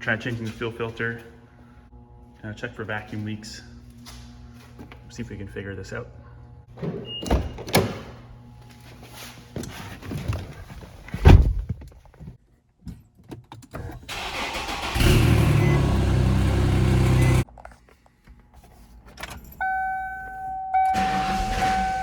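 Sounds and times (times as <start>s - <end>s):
loud thump: 11.2s - 11.8s
car engine cranking and running: 13.8s - 17.5s, 21.0s - 22.0s.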